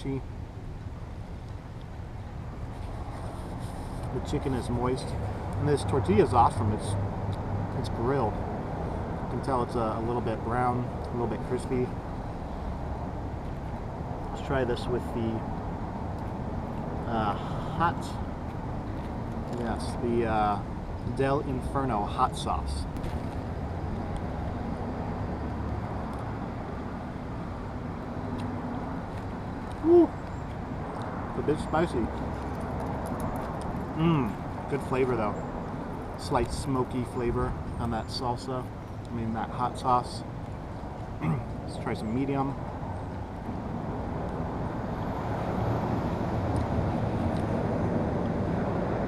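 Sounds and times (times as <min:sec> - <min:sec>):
low background rumble and hiss: 0:00.0 - 0:32.8.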